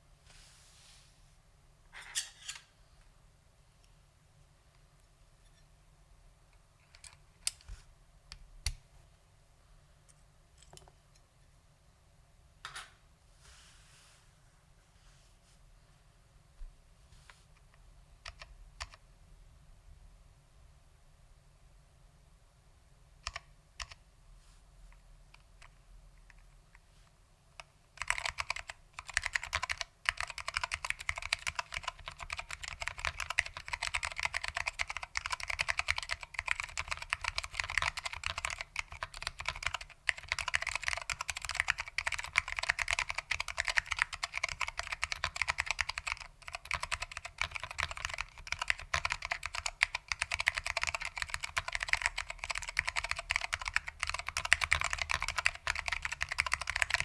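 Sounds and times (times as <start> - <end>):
fast keyboard typing: 23.2 - 24.0, 27.6 - 57.0.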